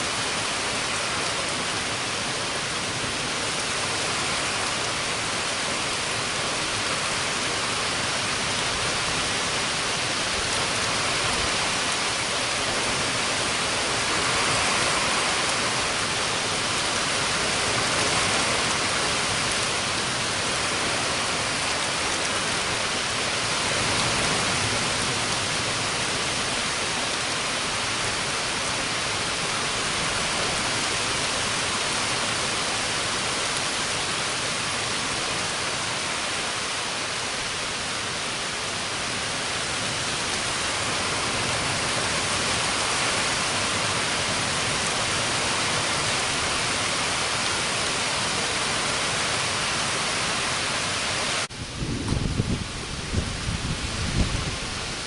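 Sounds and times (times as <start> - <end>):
heavy rain hissing: 0.0 - 55.0.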